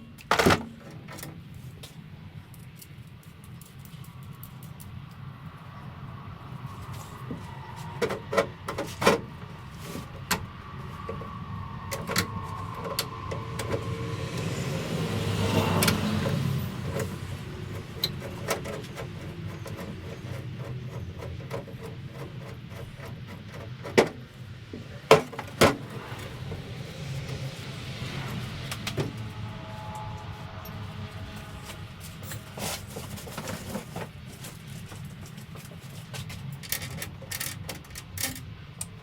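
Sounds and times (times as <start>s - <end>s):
broad rushing sound: 5.9s - 19.4s, 24.4s - 34.4s
steady low hum: 24.2s - 35.7s.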